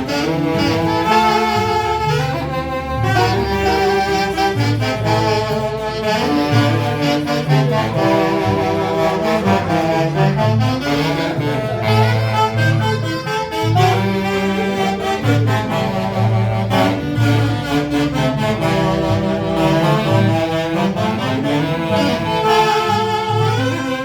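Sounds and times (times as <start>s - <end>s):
rhythmic bass line: 0.0s - 24.0s
saxophones playing melody: 0.0s - 24.0s.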